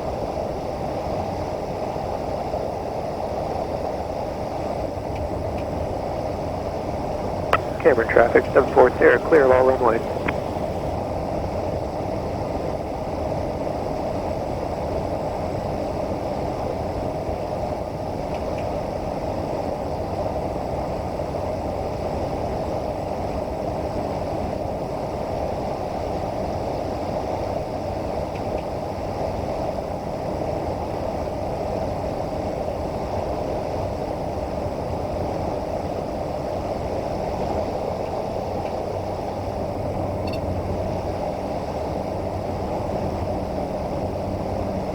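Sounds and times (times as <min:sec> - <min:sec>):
turboprop engine drone: 0:02.9 - 0:18.4, 0:32.9 - 0:44.9.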